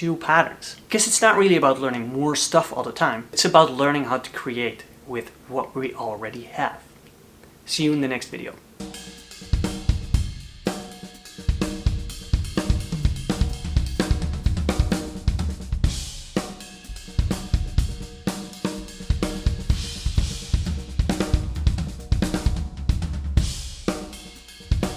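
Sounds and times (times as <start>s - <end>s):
cymbal crashes: 8.8s - 24.9s
drum kit rapid strokes: 8.8s - 24.9s.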